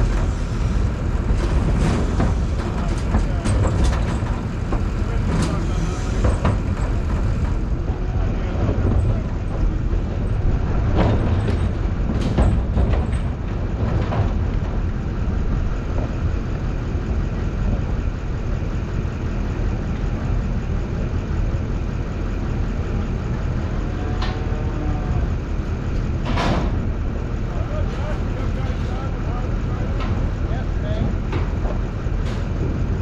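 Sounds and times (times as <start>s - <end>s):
short knocks and rattles: 0.0s - 16.2s
vehicle engine rumbling: 0.0s - 33.0s.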